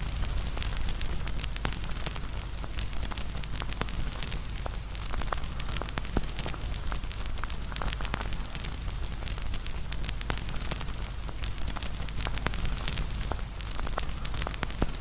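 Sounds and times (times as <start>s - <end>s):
fire crackling and popping: 0.0s - 15.0s
low rumble and hiss: 0.0s - 15.0s.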